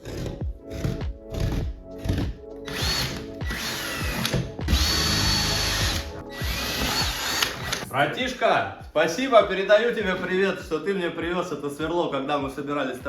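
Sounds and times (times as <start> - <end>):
background music: 0.0 - 13.0
cordless drill whining: 2.0 - 7.9.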